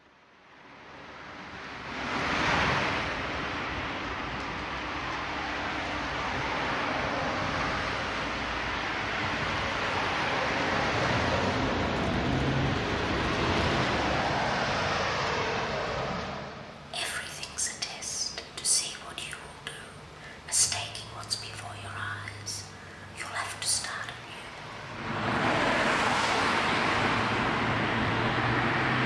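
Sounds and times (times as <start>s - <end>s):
steady rushing noise: 21.9s - 29.0s.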